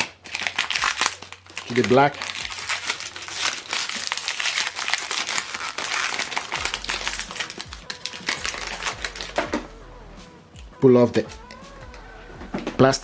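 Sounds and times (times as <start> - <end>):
plastic packaging crinkling: 0.0 - 9.6.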